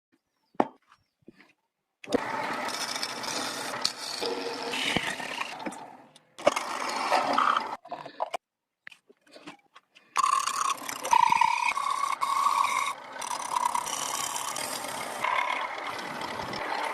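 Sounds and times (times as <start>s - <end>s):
power tool working wood: 2.1s - 7.8s, 10.2s - 16.9s.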